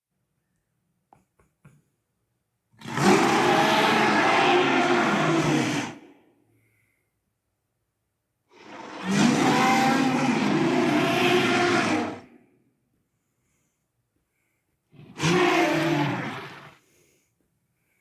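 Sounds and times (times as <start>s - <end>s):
rough low creature roar: 2.8s - 6.1s, 8.5s - 12.4s, 15.0s - 16.8s.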